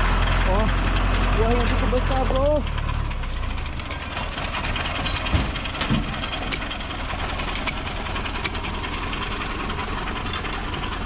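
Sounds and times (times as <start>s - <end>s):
low engine-like running sound: 0.0s - 11.0s
thump: 5.3s - 6.1s.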